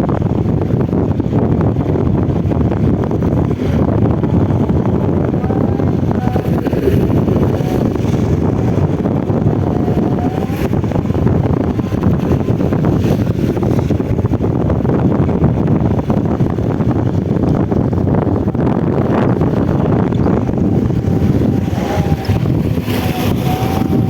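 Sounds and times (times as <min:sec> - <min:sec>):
wind buffeting microphone: 0:00.0 - 0:24.0.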